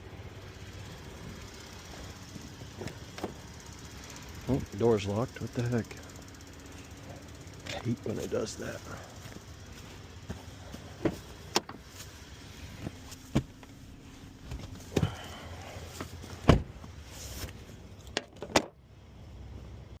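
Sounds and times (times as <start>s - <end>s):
vehicle door handle clicks and knocks: 18.2s - 18.8s.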